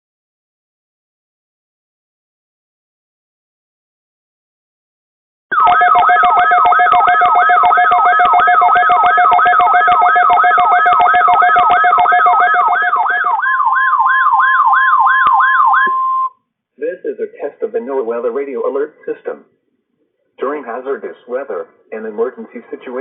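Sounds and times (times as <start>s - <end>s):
siren-like falling sweep: 5.5s - 16.3s
steady alert tones: 5.5s - 16.3s.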